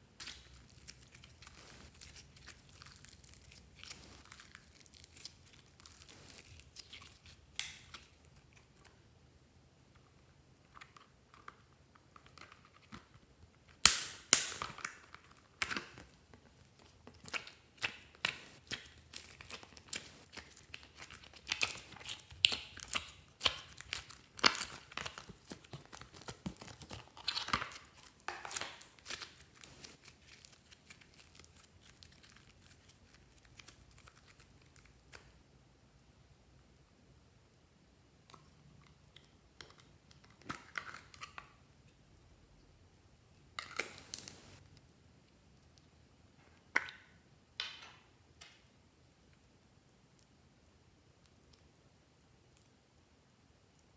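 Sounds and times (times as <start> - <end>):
slime popping and crackling: 0.2 - 8.8, 13.8 - 35.3, 43.6 - 44.6.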